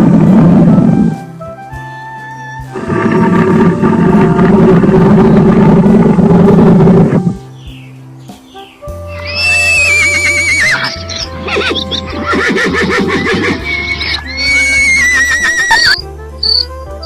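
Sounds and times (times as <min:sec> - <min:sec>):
background music: 0:00.0 - 0:17.0
horse whinnying: 0:02.7 - 0:07.4, 0:09.1 - 0:16.0.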